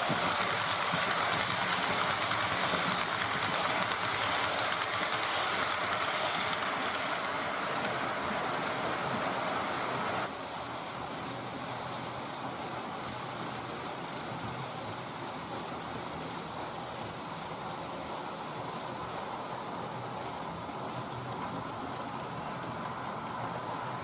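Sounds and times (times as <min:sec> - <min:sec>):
model train whirring on rails: 0:00.0 - 0:24.0.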